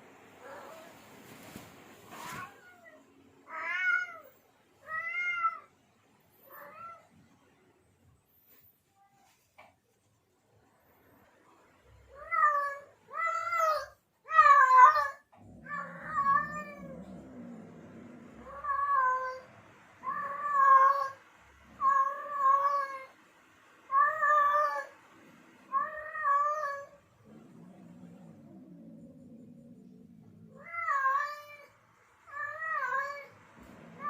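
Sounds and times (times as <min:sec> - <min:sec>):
cat yowling: 0:12.2 - 0:17.6.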